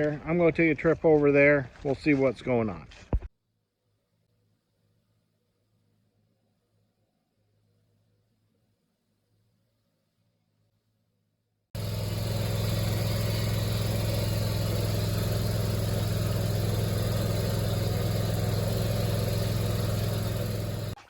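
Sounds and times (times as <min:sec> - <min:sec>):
lawn tractor engine running: 0:11.8 - 0:21.0.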